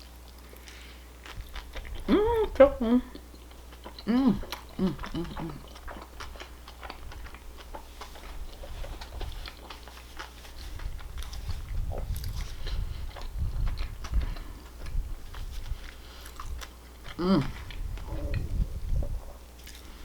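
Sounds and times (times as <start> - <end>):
person chewing food: 0.0 - 20.0
wet mouth clicks: 3.2 - 9.9.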